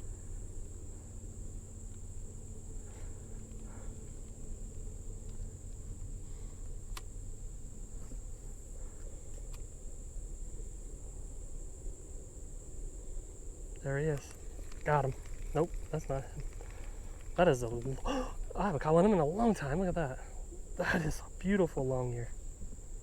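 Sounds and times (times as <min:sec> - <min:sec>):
insects droning: 0:00.0 - 0:23.0
sharp clicks: 0:13.8 - 0:18.0.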